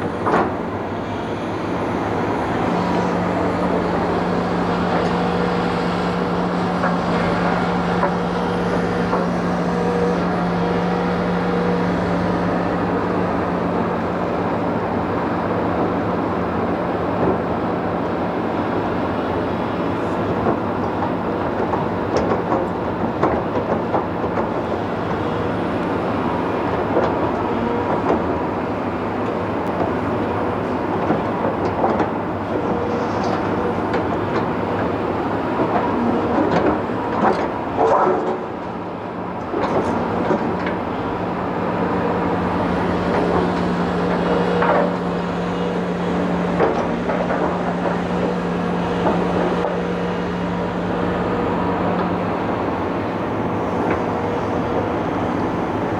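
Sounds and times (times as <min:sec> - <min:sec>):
diesel machinery engine hum: 0:00.0 - 0:55.9.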